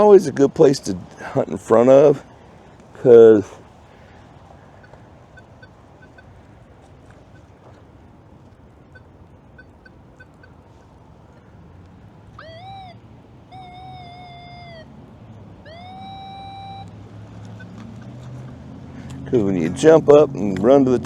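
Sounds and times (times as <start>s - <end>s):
metal detector beeps: 4.8s - 6.4s, 7.0s - 7.8s, 8.8s - 11.0s, 12.4s - 14.8s, 15.6s - 18.3s.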